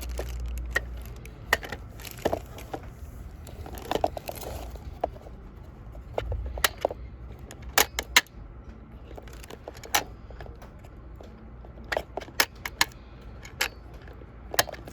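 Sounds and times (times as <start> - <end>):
plastic toy clicks: 6.2 - 8.4, 9.0 - 14.9.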